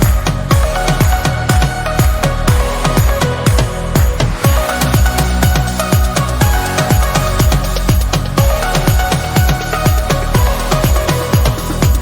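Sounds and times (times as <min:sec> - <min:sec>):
fast kick drum beat: 0:00.0 - 0:12.0.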